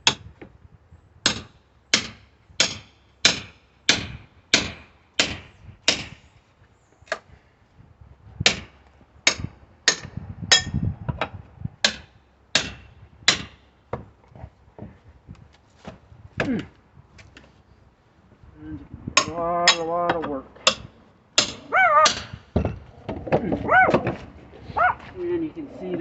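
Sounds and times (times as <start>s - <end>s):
sledgehammer striking pry bar: 1.3s - 6.2s, 11.8s - 13.6s, 19.2s - 22.8s.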